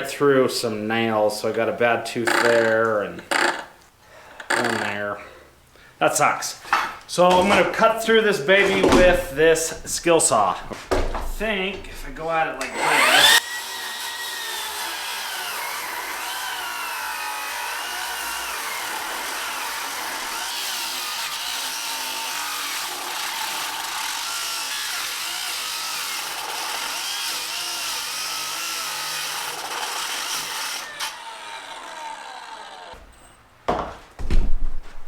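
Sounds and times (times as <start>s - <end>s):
circular saw ripping wood: 11.2s - 33.1s.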